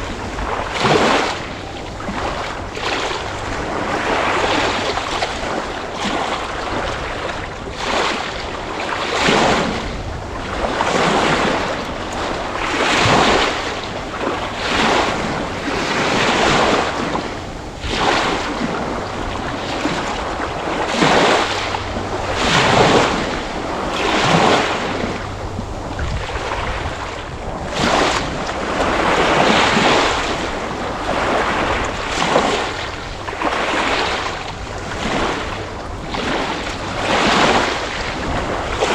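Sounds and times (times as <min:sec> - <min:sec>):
ocean waves breaking: 0:00.0 - 0:38.9.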